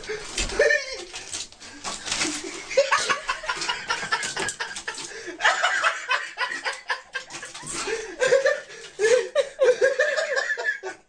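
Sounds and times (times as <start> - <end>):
people laughing: 2.4 - 11.0.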